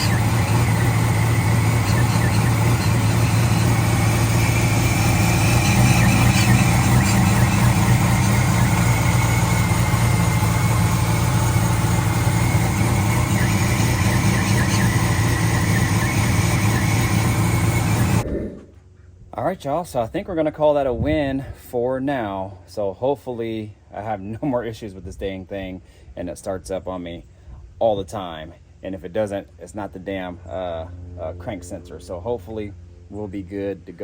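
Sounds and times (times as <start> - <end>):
car engine running: 0.0 - 19.0.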